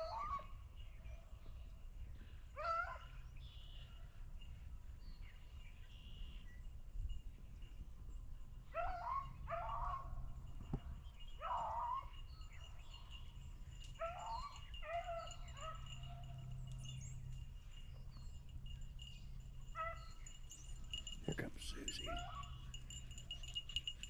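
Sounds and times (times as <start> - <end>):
beagles baying: 2.6 - 3.8, 8.7 - 10.2, 11.4 - 12.2, 13.8 - 17.2, 19.1 - 24.0.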